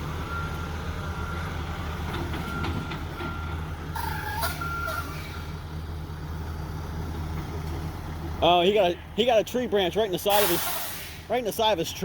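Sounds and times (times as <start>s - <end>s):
truck reversing alarm beeping: 0.0s - 7.0s
diesel engine running: 0.0s - 12.0s
brief squeal with hiss: 10.3s - 11.2s.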